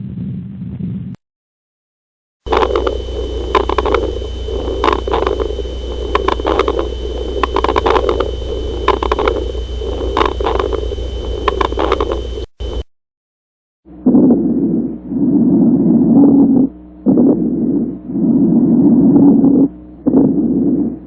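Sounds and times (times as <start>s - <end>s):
steady low hum: 2.4s - 12.9s, 13.9s - 21.0s
rough rumbling noise: 2.5s - 12.8s.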